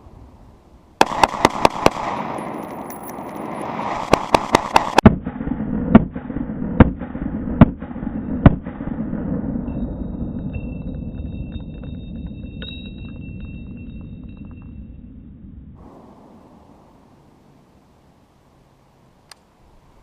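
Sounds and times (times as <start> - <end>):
low rumble: 0.0 - 17.9
rifle shots: 1.0 - 9.4.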